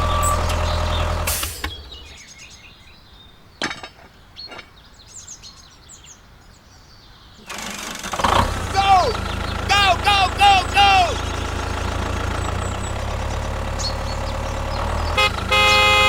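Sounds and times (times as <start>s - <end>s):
small tractor engine running: 0.0s - 2.0s, 7.5s - 16.0s
birds chirping: 0.0s - 16.0s.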